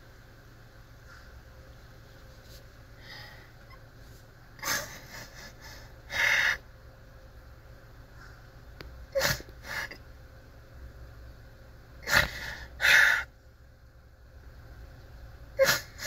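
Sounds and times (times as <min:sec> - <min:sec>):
man breathing in and sniffling: 0:12.0 - 0:13.3.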